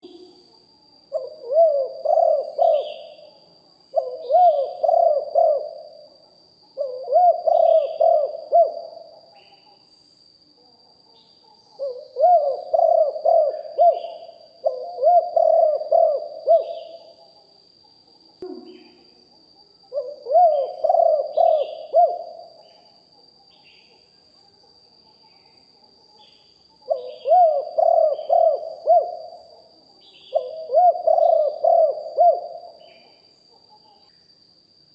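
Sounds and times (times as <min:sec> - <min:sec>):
dove cooing: 0:01.1 - 0:06.1, 0:06.8 - 0:09.8, 0:11.4 - 0:17.3, 0:18.4 - 0:19.1, 0:19.9 - 0:22.9, 0:26.9 - 0:34.1.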